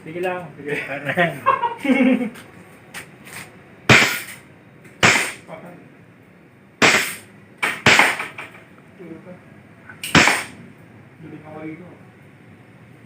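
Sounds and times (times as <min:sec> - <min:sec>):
airsoft pistol shots: 0:03.9 - 0:04.4, 0:05.0 - 0:05.4, 0:06.8 - 0:08.4, 0:10.0 - 0:10.6.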